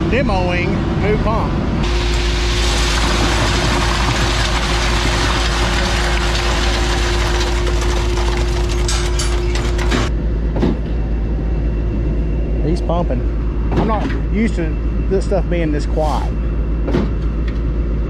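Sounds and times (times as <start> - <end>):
skid steer engine rumbling: 0.0 - 10.2
mechanical clatter: 3.0 - 10.8.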